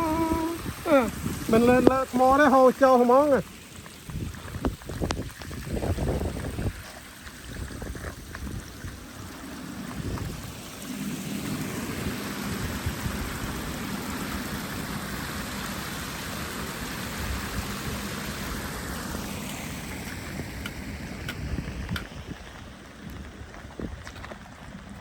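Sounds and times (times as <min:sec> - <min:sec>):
heavy rain falling: 0:00.0 - 0:03.4, 0:09.0 - 0:25.0
water pouring over rocks: 0:00.0 - 0:25.0.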